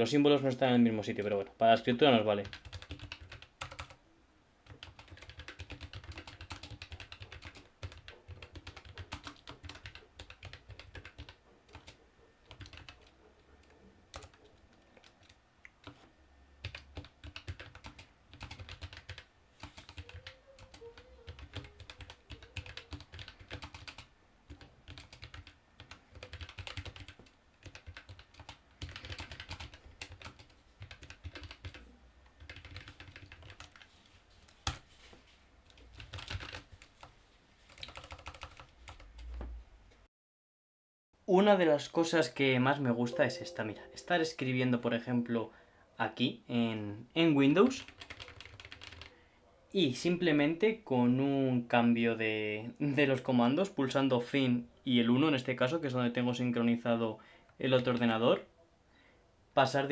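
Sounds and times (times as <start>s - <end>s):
mechanical keyboard typing: 2.4s - 4.0s, 4.7s - 13.1s, 14.1s - 14.4s, 16.6s - 31.8s, 32.4s - 33.9s, 35.7s - 37.1s, 37.7s - 39.3s, 47.7s - 49.1s.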